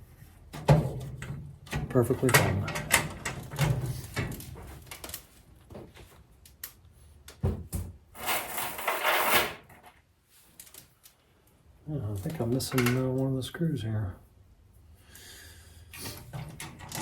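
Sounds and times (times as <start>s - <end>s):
clicks and light knocks: 10.6s - 13.4s.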